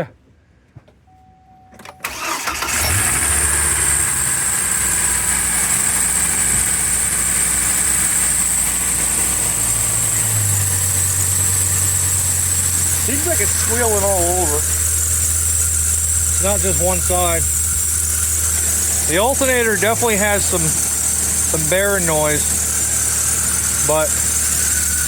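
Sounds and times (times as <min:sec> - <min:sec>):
truck engine starting and idling: 0:01.8 - 0:25.0
high-pitched belt squeal: 0:02.0 - 0:25.0.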